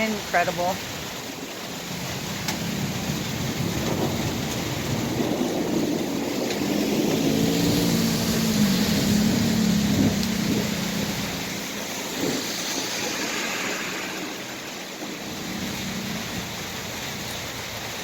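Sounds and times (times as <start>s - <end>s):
heavy rain pouring: 0.0s - 18.0s
low rumble of thunder: 1.9s - 17.3s.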